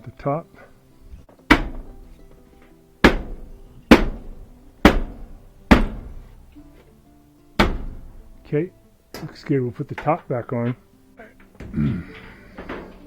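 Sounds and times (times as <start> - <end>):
metallic knocks on sheet metal: 1.5 - 2.4, 3.0 - 6.8, 7.6 - 8.5.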